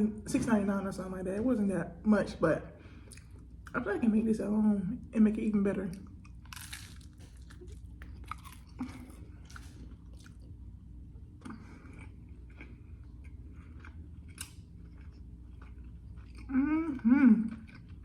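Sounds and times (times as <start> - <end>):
person chewing food: 3.0 - 3.7, 6.0 - 18.0.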